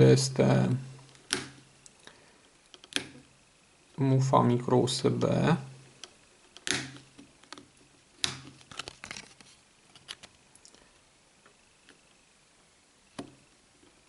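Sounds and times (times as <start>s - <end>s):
plastic clicks and scrapes: 6.5s - 10.4s.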